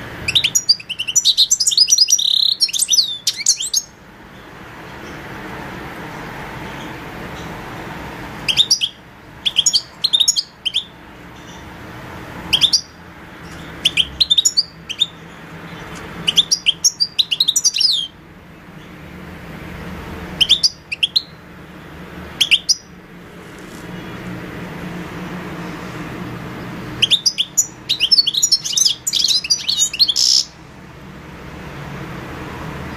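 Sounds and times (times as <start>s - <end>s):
goldfinch twittering chirps: 0.2s - 5.2s, 8.5s - 11.7s, 12.5s - 18.2s, 20.4s - 21.4s, 22.4s - 22.9s, 26.9s - 30.6s.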